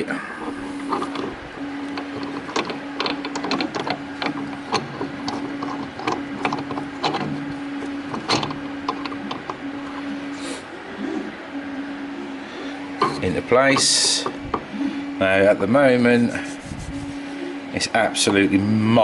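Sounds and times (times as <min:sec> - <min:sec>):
steady low hum: 0:00.0 - 0:19.0
metal parts clicking and rattling: 0:00.4 - 0:10.0.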